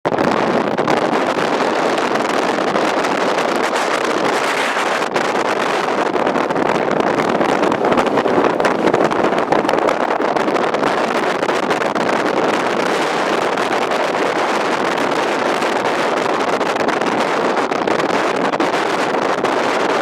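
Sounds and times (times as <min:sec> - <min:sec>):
wind rushing over microphone: 0:00.1 - 0:20.0.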